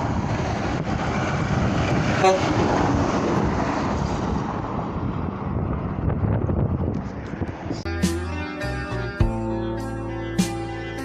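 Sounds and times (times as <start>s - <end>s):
highway traffic passing: 0.0s - 11.0s
short horn toot: 2.2s - 2.6s.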